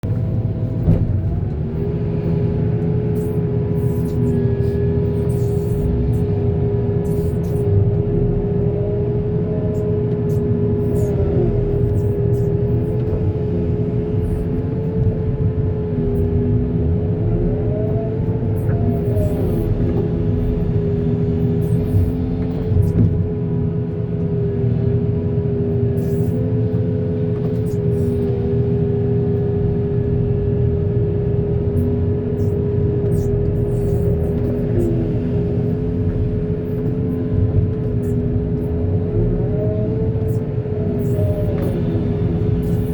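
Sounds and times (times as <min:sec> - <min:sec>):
diesel engine rumbling: 0:00.0 - 0:42.9
steady whine: 0:00.0 - 0:42.9.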